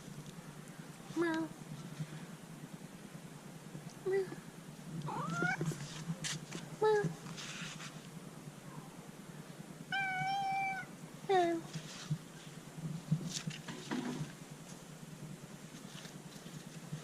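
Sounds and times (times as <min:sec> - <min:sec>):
cat meowing: 0:05.1 - 0:05.8, 0:09.9 - 0:10.9.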